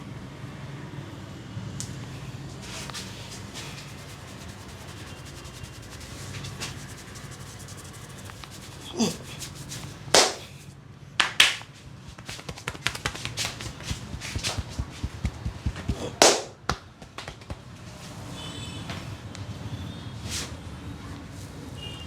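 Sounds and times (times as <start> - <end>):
hands rubbing hair and scalp: 2.5 - 10.7, 11.4 - 17.6
loud sharp snaps: 10.2 - 10.6, 11.2 - 17.6
quick slaps or taps: 10.2 - 10.6, 11.2 - 17.7.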